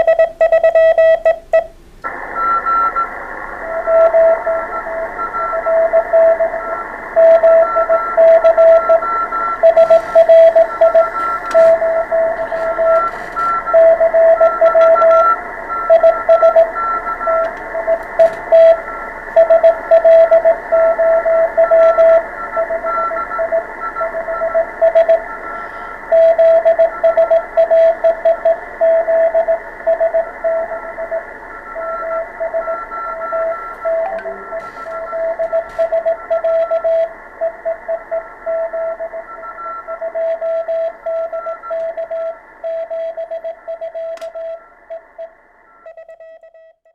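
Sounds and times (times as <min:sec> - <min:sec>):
morse code tone: 0:00.0 - 0:46.9
radio receiver hiss: 0:02.0 - 0:22.5, 0:33.5 - 0:37.6
faint higher keyed tone: 0:34.0 - 0:35.2.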